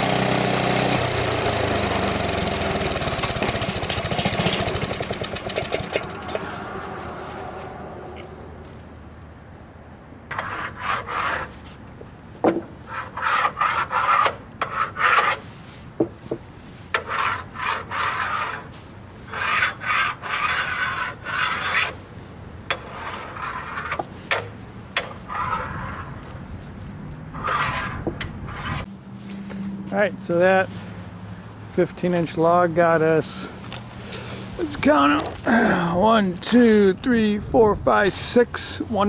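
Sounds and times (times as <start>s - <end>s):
wood scraping on wood: 1.9s - 8.8s, 10.3s - 11.8s, 12.5s - 22.0s, 22.7s - 29.6s.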